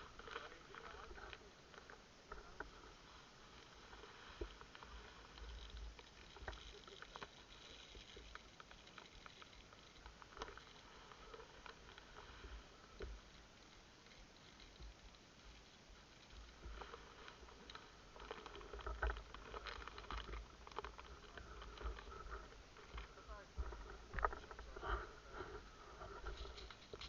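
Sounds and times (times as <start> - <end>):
handling clicks and rustles: 0.0 - 27.0
low bumps: 15.9 - 27.0.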